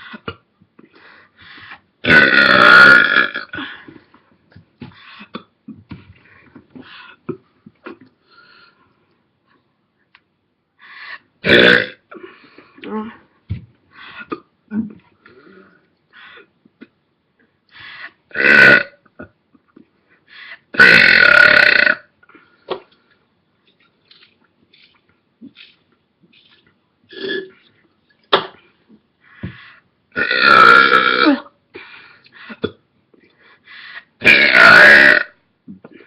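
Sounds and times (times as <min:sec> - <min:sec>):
person belching: 0:02.0 - 0:03.6, 0:11.4 - 0:12.1, 0:18.3 - 0:19.3, 0:20.8 - 0:22.1, 0:27.1 - 0:27.5, 0:30.2 - 0:31.5, 0:34.2 - 0:36.0.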